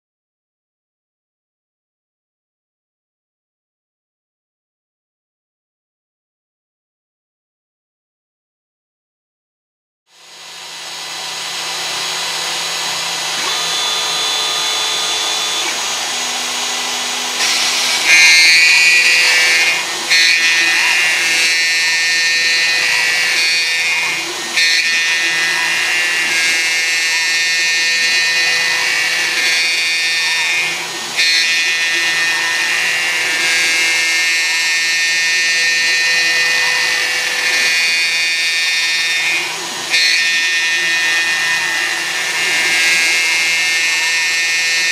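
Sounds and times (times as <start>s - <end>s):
milling machine spindle whine: 10.1s - 44.9s
motor tones rising and falling: 10.2s - 44.9s.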